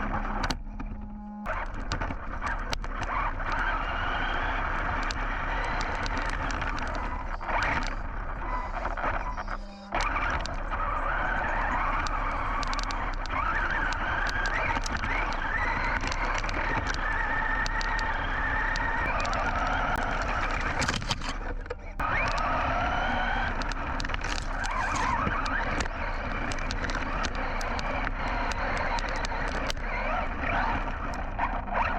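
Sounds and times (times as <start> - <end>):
small ticks and knocks: 0.0 - 3.7
rc truck motor whine: 0.0 - 31.9
tyres on dirt: 1.5 - 31.9.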